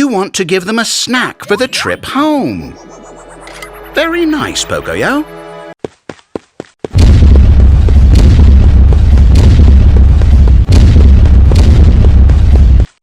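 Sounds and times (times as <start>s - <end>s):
booming distorted blast: 7.0s - 12.9s.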